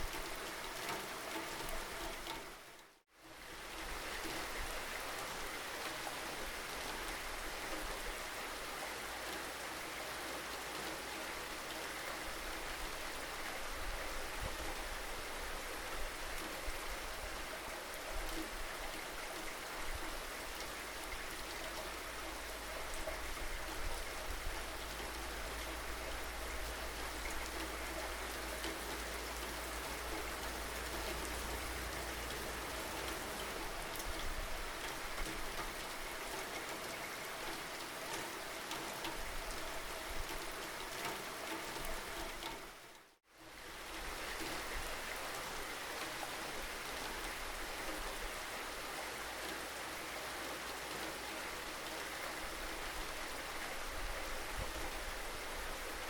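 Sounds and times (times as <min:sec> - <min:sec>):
steady rainfall hiss: 0:00.0 - 0:56.0
raindrops pattering: 0:20.2 - 0:56.0.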